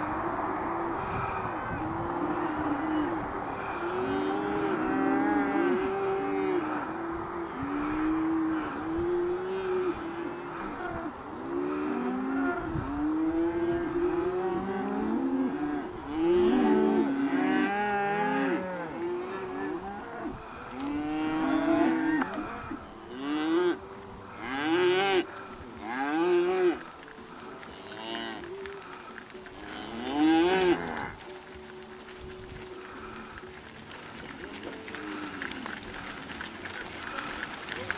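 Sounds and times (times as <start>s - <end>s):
cattle mooing and bawling: 1.2s - 23.8s, 29.6s - 31.2s.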